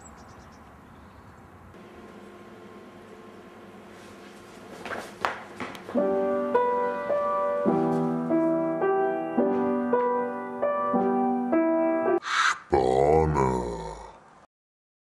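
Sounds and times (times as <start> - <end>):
slow keyboard melody: 6.0 - 12.2
low falling vocal groan: 12.4 - 14.2.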